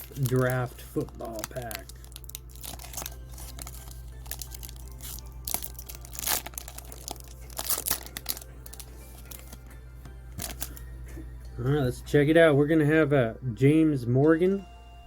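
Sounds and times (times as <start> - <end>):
foil wrapper crinkling and tearing: 0.0 - 9.7, 10.3 - 10.8.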